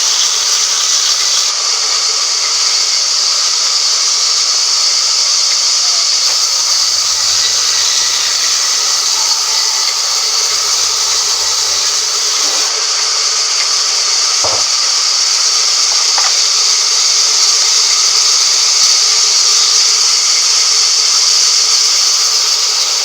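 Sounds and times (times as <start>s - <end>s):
sawmill high-pitched hiss: 0.0s - 23.0s
knock: 14.4s - 14.7s.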